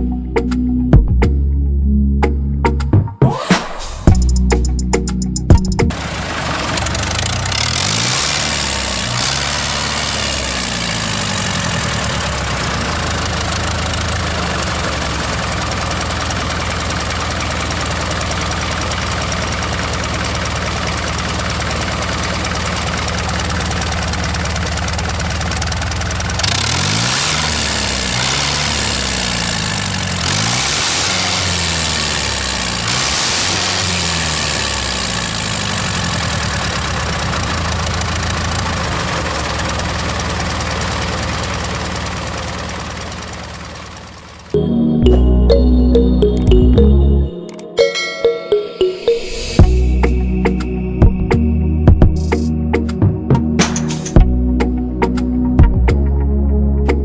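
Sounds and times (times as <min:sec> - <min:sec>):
tractor engine knocking idle: 0:09.7 - 0:26.8, 0:34.6 - 0:44.5.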